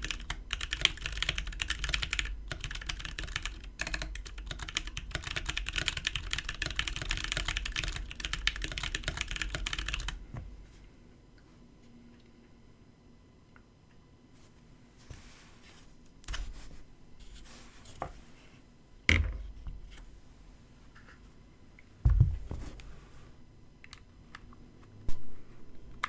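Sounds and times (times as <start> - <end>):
mechanical keyboard clacks: 0.0 - 10.2.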